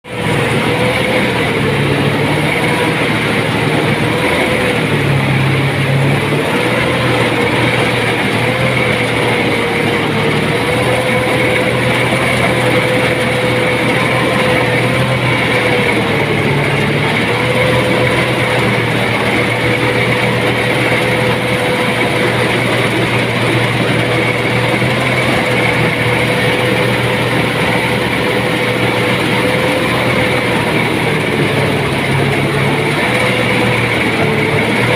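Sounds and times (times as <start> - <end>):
combine harvester running: 0.0 - 34.9.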